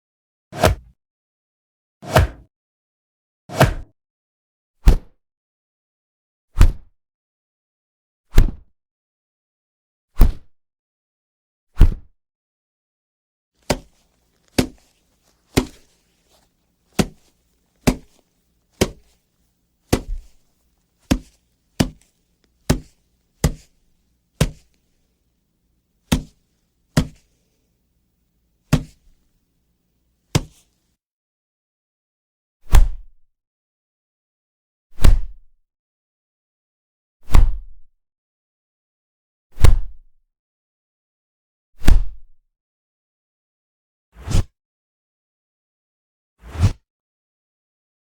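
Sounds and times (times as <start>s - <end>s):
punch sound effects: 2.0s - 2.5s, 3.5s - 3.9s.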